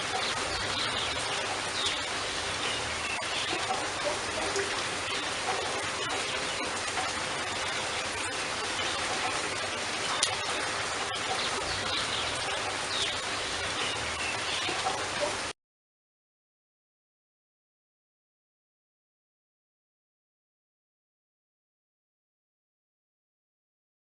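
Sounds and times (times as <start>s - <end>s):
raindrops ticking: 0.0s - 15.5s
steady rain: 0.0s - 15.6s.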